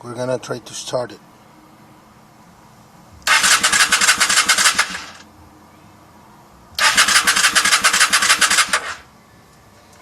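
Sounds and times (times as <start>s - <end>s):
electric starter cranking engine: 3.2s - 5.2s, 6.8s - 9.1s.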